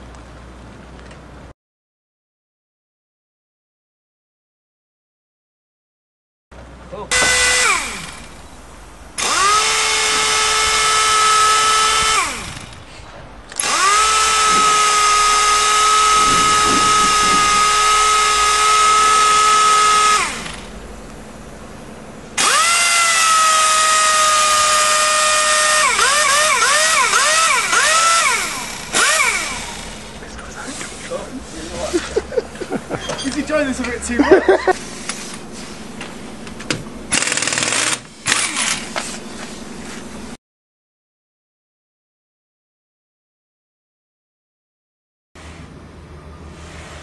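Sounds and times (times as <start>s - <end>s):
power tool motor whining: 7.1s - 12.9s, 13.5s - 32.2s, 34.6s - 40.2s.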